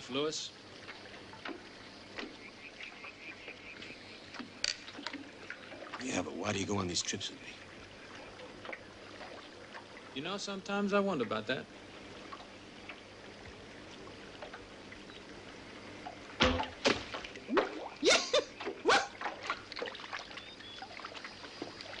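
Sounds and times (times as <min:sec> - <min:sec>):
water trickling: 0:00.0 - 0:22.0
paddles splashing in water: 0:00.6 - 0:22.0.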